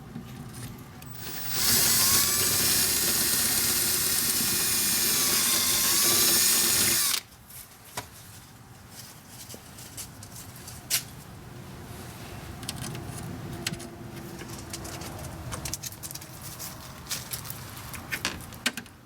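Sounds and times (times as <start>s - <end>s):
power drill drilling: 1.1s - 7.2s.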